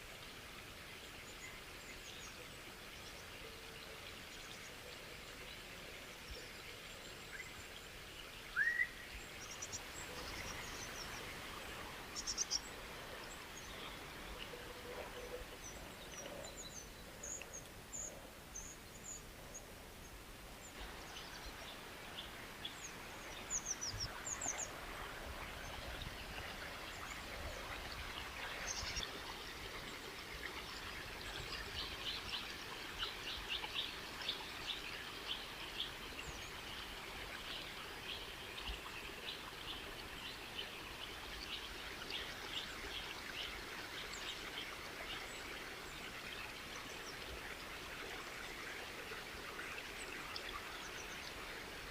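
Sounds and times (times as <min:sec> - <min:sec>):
flowing water rushing: 0:00.0 - 0:51.9
rising whistled bird call: 0:08.6 - 0:09.0.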